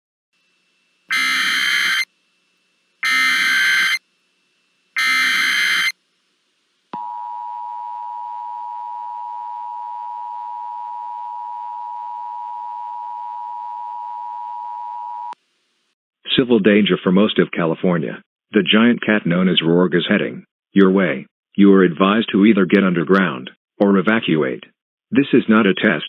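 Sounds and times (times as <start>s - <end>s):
digital data tone bursts: 1.1s - 2.1s, 3.0s - 4.0s, 5.0s - 6.0s
two-tone attention signal: 1.1s - 2.1s, 3.0s - 4.0s, 5.0s - 5.9s.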